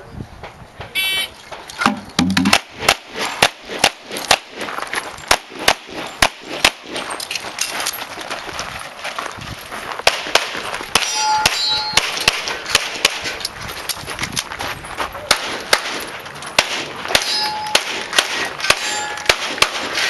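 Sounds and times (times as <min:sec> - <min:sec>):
handgun shots: 0:01.8 - 0:04.7, 0:10.0 - 0:13.4, 0:15.3 - 0:20.0.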